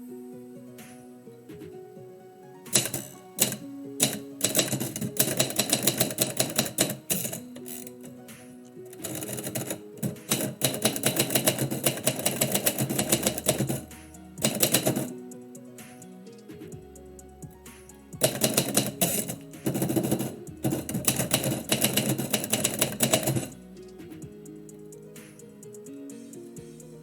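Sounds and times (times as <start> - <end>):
background instrumental music: 0.0 - 27.0
typewriter keys clacking: 2.7 - 8.1, 8.9 - 15.1, 18.2 - 23.6.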